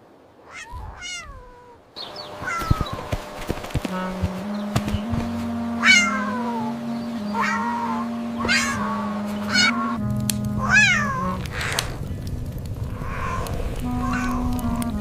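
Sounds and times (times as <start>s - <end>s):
cat meowing: 0.5s - 1.8s, 2.4s - 3.0s, 5.8s - 6.6s, 7.3s - 9.9s, 10.6s - 11.9s, 13.0s - 14.5s
background music with low notes: 3.7s - 12.6s, 13.8s - 15.0s.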